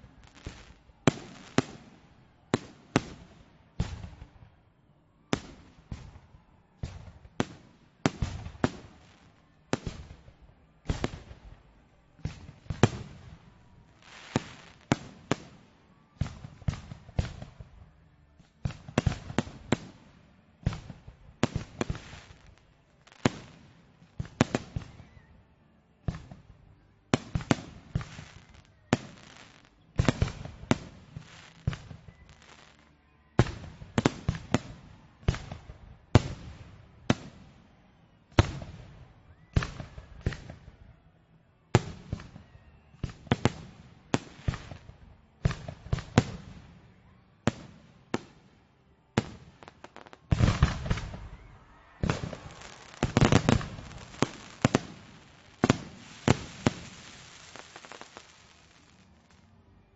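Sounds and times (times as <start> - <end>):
fireworks bangs echoing: 12.2 - 15.6, 20.6 - 25.0, 27.2 - 32.8, 49.2 - 59.4.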